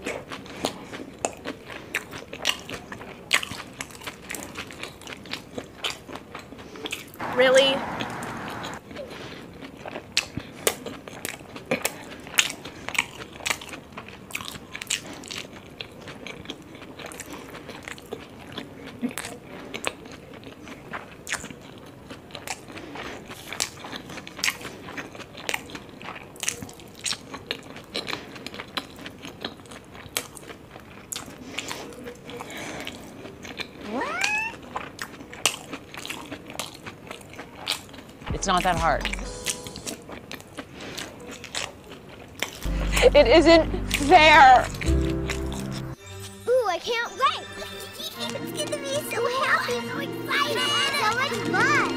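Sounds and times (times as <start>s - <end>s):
chewing and biting food: 0.0s - 7.3s, 7.9s - 46.0s
short rising pitched sound: 42.7s - 46.0s.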